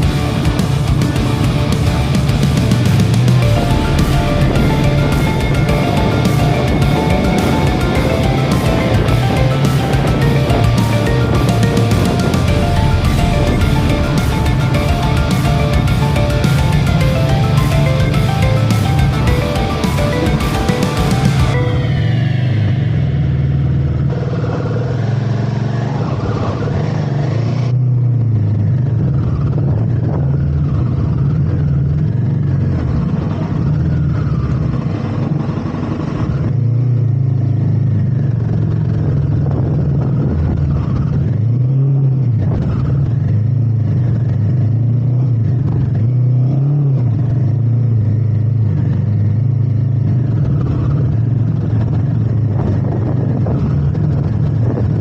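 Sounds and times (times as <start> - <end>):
motorcycle engine running: 0.0 - 26.9, 28.0 - 55.0.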